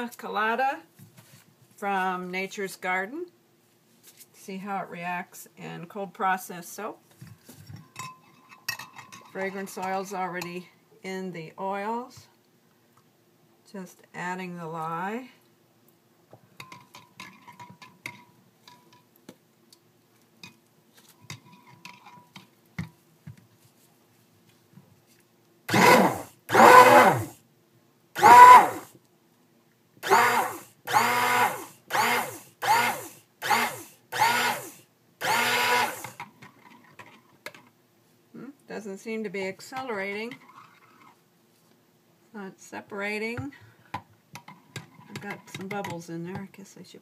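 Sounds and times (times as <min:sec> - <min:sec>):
faint clinks and handling noises: 0:07.2 - 0:09.6
stick blender motor whine: 0:25.7 - 0:27.3, 0:28.2 - 0:28.9, 0:30.0 - 0:36.2.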